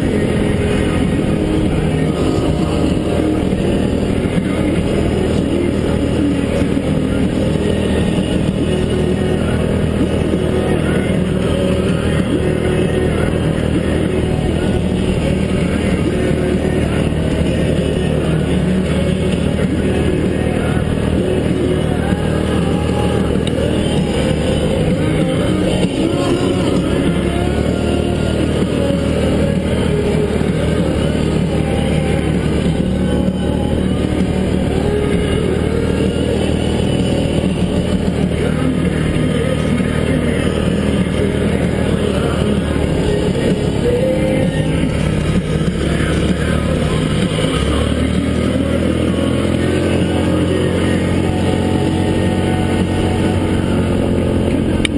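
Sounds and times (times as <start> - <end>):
atv engine running: 0.0 - 54.9.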